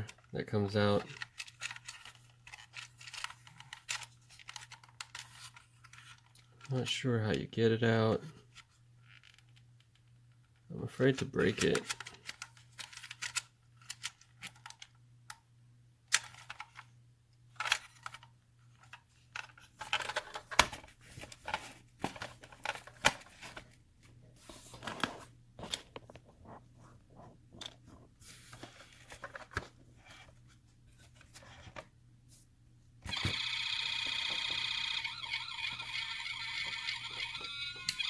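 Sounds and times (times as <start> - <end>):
electronic toy siren: 33.1 - 38.0
plastic toy clicks and scrapes: 33.1 - 38.0.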